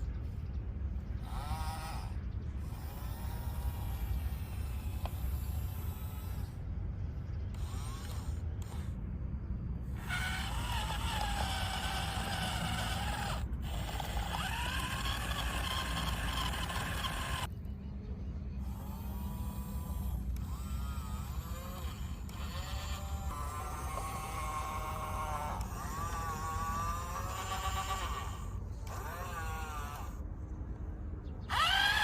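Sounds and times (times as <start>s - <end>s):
toy electric motors whirring: 0.0s - 0.4s, 1.1s - 9.0s, 9.8s - 17.5s, 18.6s - 30.4s, 31.5s - 32.0s
steady low hum: 0.0s - 32.0s.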